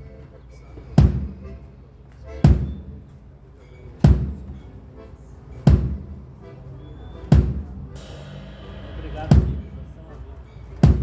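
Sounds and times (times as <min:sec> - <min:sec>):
deep drum hits: 0:04.0 - 0:04.5, 0:05.7 - 0:06.1, 0:07.3 - 0:11.0.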